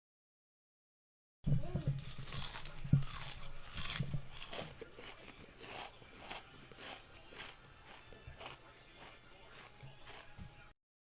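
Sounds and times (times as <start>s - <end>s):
potato chips crunching: 1.8s - 10.4s.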